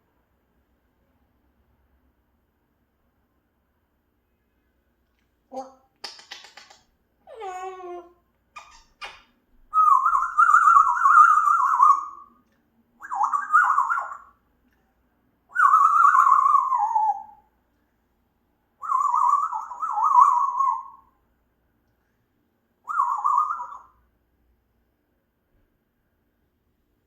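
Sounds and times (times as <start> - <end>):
parrot warbling whistled calls: 8.6 - 12.3, 13.0 - 14.3, 15.5 - 17.4, 18.8 - 21.1, 22.8 - 23.9.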